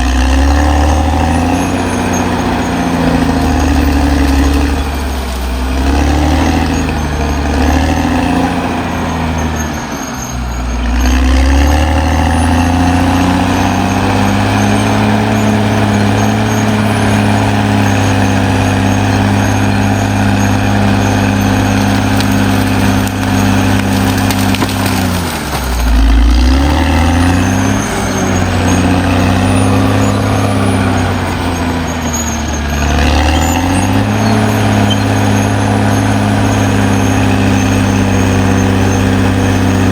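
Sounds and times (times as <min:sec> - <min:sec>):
bulldozer diesel engine under load: 0:00.0 - 0:39.9.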